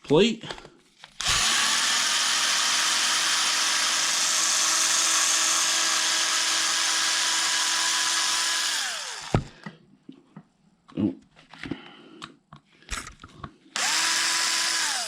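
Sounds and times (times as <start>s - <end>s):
electric drill whining: 1.2s - 9.6s, 13.8s - 15.0s.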